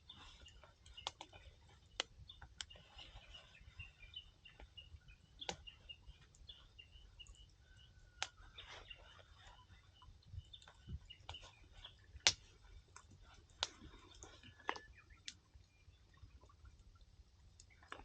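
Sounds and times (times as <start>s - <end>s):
campfire crackling: 0.0s - 3.0s, 10.5s - 15.7s
sharp pops of burning wood: 12.2s - 12.5s.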